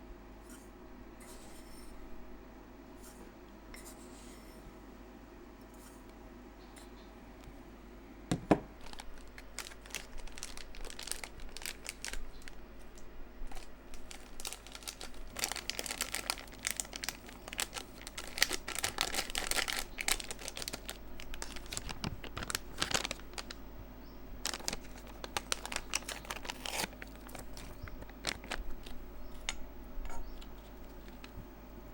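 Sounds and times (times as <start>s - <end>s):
packaging crinkling and rustling: 8.7s - 23.6s, 24.4s - 31.5s.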